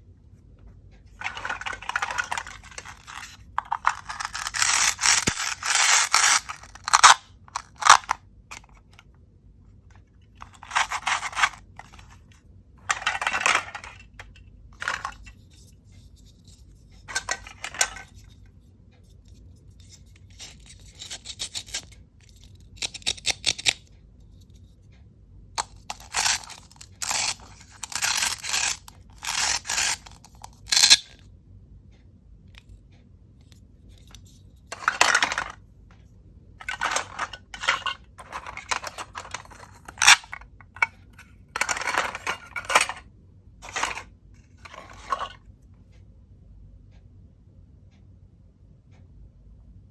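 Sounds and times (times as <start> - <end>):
plastic pieces clicking and tapping: 1.2 - 9.0, 10.4 - 12.2, 12.9 - 15.4, 20.0 - 23.9, 25.6 - 31.1, 34.0 - 35.6, 36.6 - 43.0, 43.6 - 45.4.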